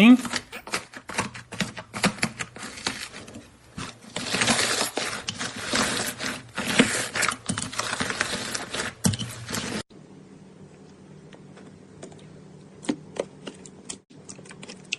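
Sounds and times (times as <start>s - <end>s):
faint steady hum: 9.9s - 14.9s.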